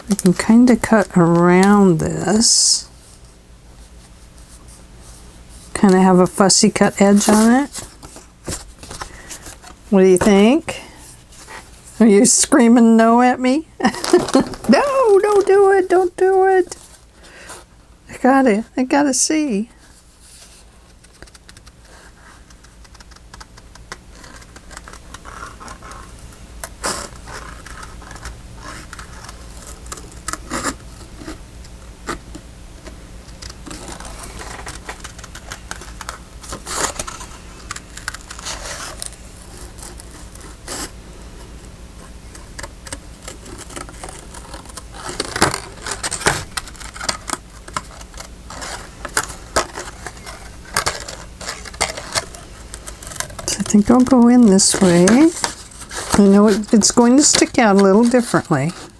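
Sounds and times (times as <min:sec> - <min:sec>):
paper rustling: 0:00.1 - 0:12.4, 0:13.8 - 0:17.6, 0:33.3 - 0:41.0, 0:42.0 - 0:58.9
scissors snipping paper: 0:42.3 - 0:58.9.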